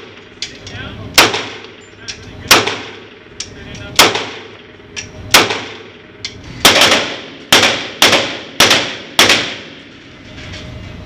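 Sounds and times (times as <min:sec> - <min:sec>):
faint gunshots: 0:01.2 - 0:01.6, 0:02.5 - 0:03.0, 0:04.0 - 0:04.5, 0:05.3 - 0:05.8, 0:06.6 - 0:09.7
gunshots echoing: 0:01.2 - 0:01.8, 0:02.4 - 0:03.3, 0:03.9 - 0:09.8.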